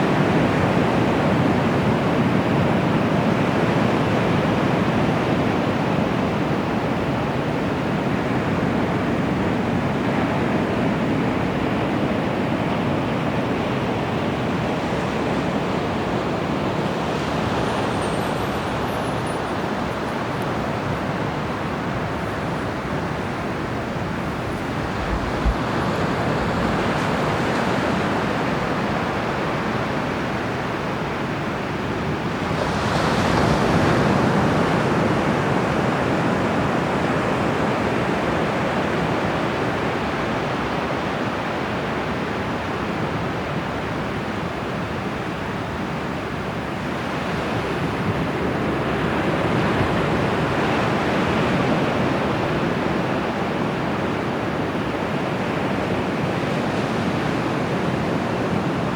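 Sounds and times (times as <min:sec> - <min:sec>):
wind on microphone: 0:16.8 - 0:29.0.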